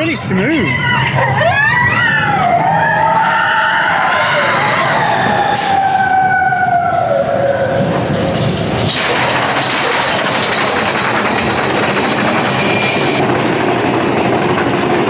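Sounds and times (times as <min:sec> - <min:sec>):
roller coaster rushing rumble: 0:00.0 - 0:15.0
roller coaster squealing: 0:00.5 - 0:14.9.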